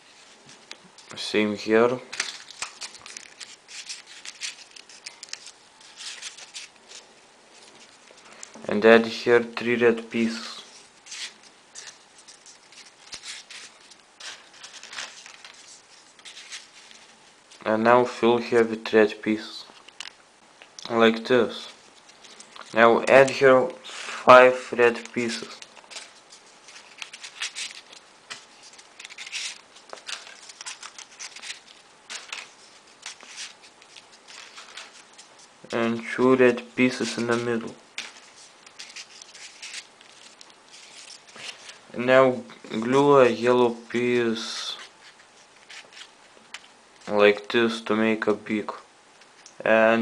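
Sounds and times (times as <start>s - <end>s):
paper rustling and scraping: 2.1s - 8.4s, 10.4s - 18.3s, 24.9s - 41.8s, 44.0s - 46.7s.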